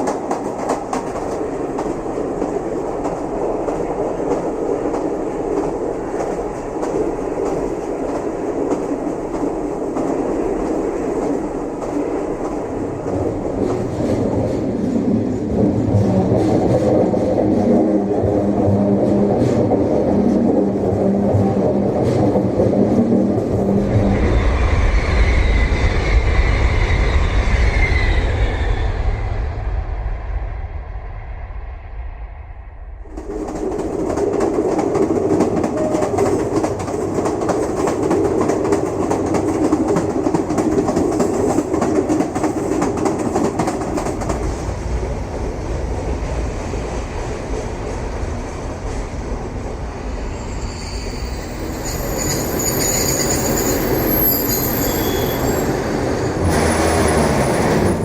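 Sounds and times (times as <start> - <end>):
train rumbling on rails: 0.0 - 58.0
high wheel squeal: 50.2 - 58.0
wheels clattering on track: 51.5 - 58.0.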